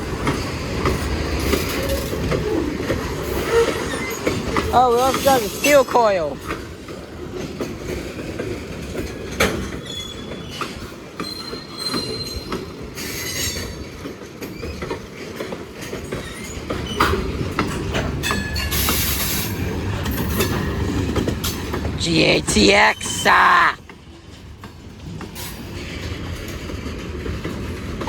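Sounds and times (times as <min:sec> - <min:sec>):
freight train rumble: 0:00.0 - 0:28.0
wheels clacking over rail joints: 0:00.0 - 0:28.0
high wheel squeal: 0:03.3 - 0:04.4.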